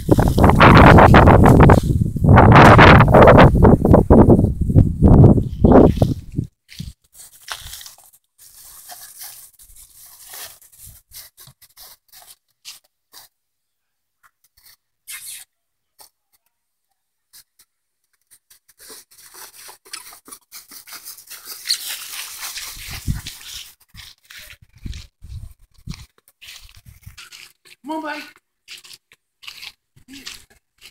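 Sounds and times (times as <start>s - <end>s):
puppies scratching and scuffling: 6.7s - 13.3s, 17.4s - 27.8s, 28.6s - 30.9s.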